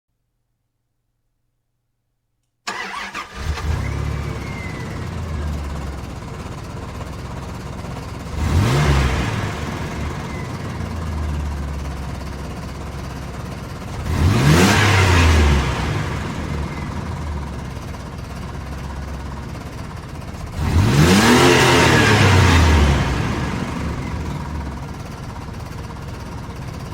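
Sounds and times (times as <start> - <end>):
car engine revving: 2.7 - 11.6, 13.9 - 18.2, 20.4 - 26.9
car engine starting and idling: 2.7 - 26.9.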